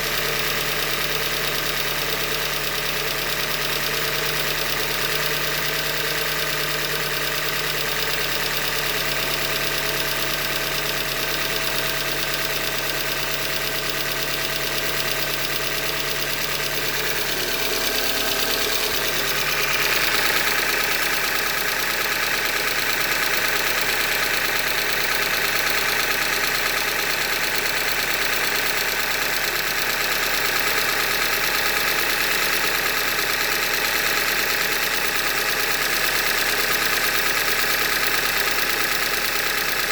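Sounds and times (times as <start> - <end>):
car engine running with knock: 0.0 - 39.9.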